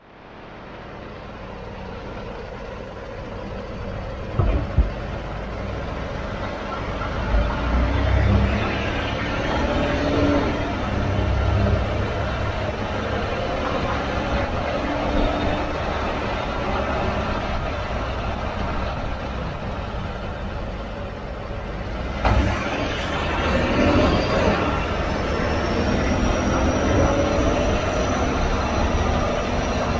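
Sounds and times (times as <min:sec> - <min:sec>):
pickup truck road noise: 0:00.0 - 0:29.9
short low thumps: 0:04.3 - 0:05.3.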